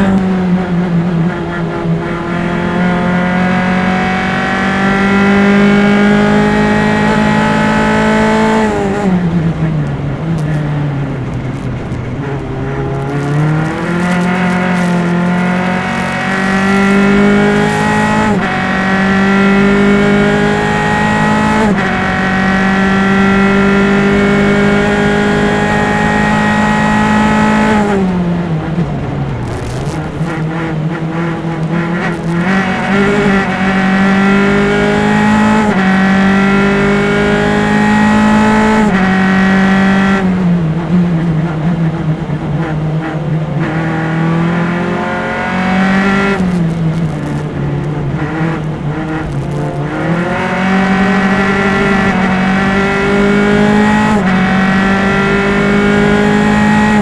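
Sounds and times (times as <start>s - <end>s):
engine crackles: 0.0s - 57.0s
race car engine revving: 0.0s - 57.0s.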